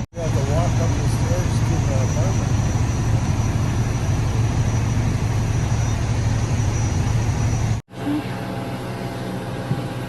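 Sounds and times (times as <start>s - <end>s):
fire truck engine idling: 0.2s - 7.8s.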